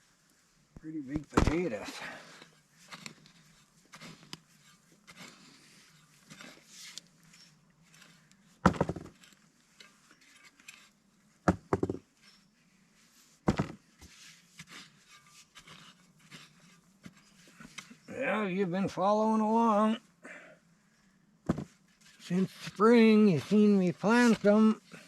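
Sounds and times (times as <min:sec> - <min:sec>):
rustling and scraping in soil: 0:00.0 - 0:20.2, 0:20.8 - 0:25.0
digging tool thuds: 0:01.2 - 0:01.8, 0:08.6 - 0:09.3, 0:13.4 - 0:13.8, 0:21.4 - 0:21.8.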